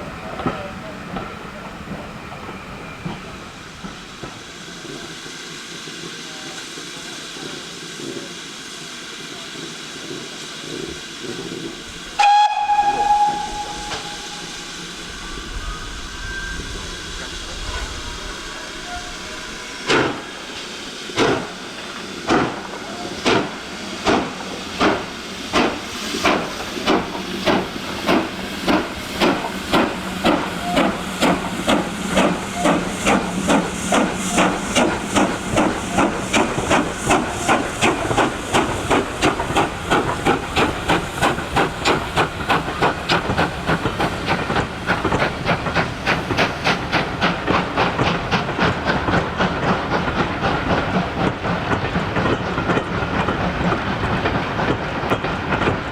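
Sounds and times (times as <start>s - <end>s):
steam hissing: 0.8s - 55.9s
locomotive exhaust beats: 11.4s - 15.3s
steam locomotive whistle: 12.1s - 17.9s, 30.2s - 33.3s.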